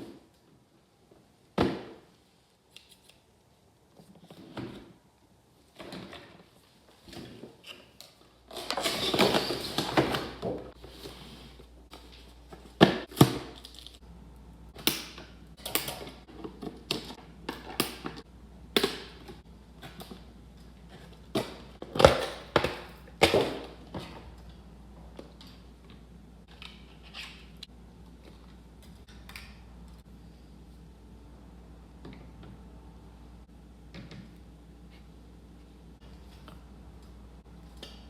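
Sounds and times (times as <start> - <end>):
packaging rustling and scraping: 8.5 - 12.8.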